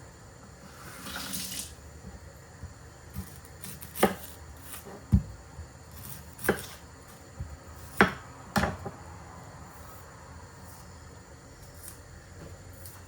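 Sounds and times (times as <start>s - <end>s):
knife chopping on cutting board: 3.2s - 5.3s, 6.0s - 6.8s, 7.4s - 8.9s.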